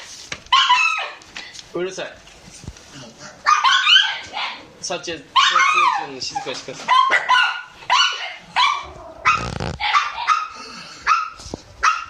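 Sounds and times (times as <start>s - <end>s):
dog barking in high yaps: 0.5s - 1.2s, 3.4s - 4.7s, 5.4s - 6.2s, 6.9s - 12.0s
rough dog bark: 6.9s - 12.0s.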